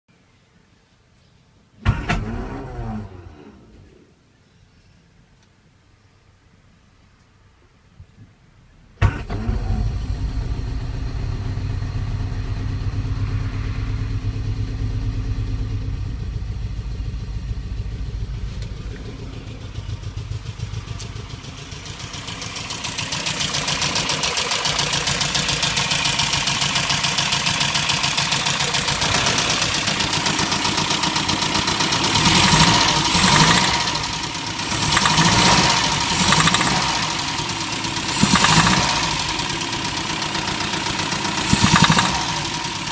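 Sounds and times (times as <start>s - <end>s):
car engine starting and running: 1.8s - 4.1s, 8.6s - 42.9s
engine revving: 1.9s - 4.0s, 9.0s - 42.9s
engine knocking: 16.2s - 42.9s.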